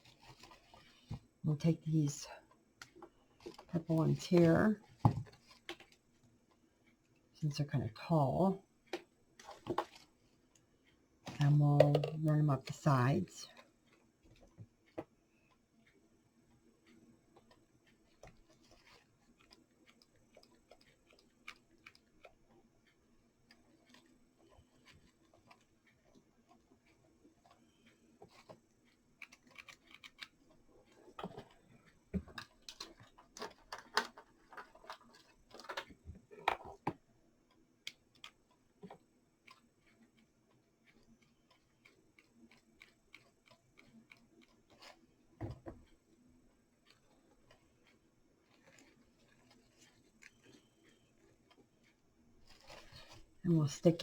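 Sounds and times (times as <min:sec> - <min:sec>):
low steady hum: 0:01.2 - 0:20.8
stems clicking and snipping: 0:28.3 - 0:30.4, 0:37.9 - 0:45.0.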